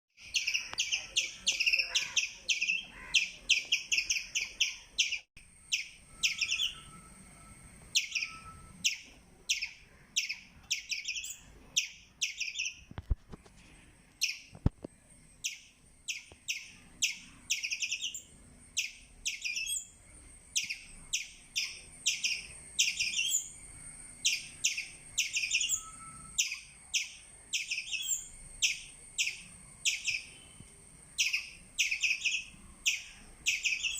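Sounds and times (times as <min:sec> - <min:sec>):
squirrel chirping: 0:00.2 - 0:07.0, 0:07.9 - 0:12.8, 0:14.2 - 0:14.5, 0:15.4 - 0:23.6, 0:24.2 - 0:30.4, 0:31.1 - 0:33.9.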